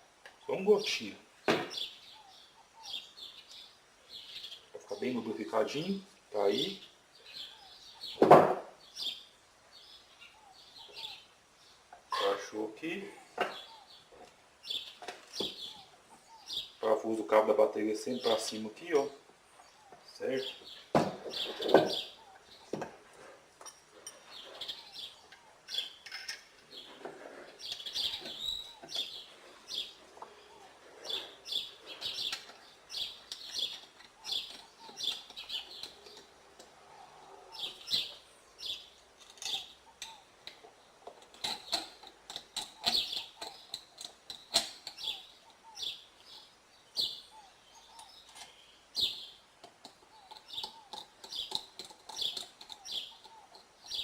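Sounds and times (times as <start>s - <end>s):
birds chirping: 0.0s - 54.0s
sharp clicks and knocks: 39.2s - 45.6s, 49.6s - 54.0s.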